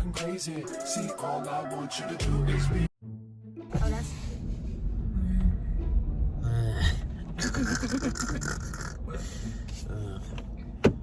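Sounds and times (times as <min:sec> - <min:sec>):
car cabin rumble: 0:03.7 - 0:11.0
breathy vocal sounds: 0:06.4 - 0:10.4.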